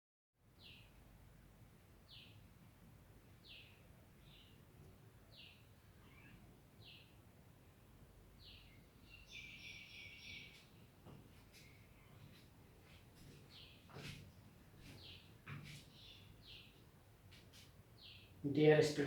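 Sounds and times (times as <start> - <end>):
bird calls: 8.4 - 10.9, 14.8 - 16.8.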